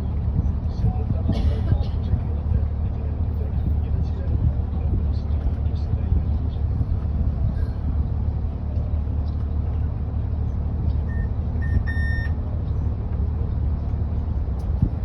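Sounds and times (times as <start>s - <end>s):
boat engine rumbling: 0.0s - 15.0s
short electronic beeps: 11.1s - 12.4s.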